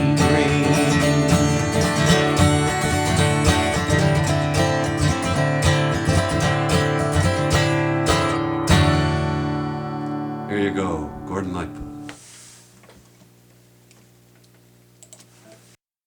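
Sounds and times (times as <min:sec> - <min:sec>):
acoustic guitar strumming: 0:00.0 - 0:12.1.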